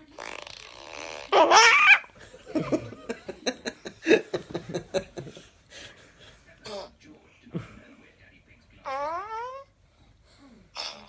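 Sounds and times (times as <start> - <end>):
buzzing fart noise: 0.0 - 1.6, 10.8 - 11.0
baby laughing: 1.1 - 2.1.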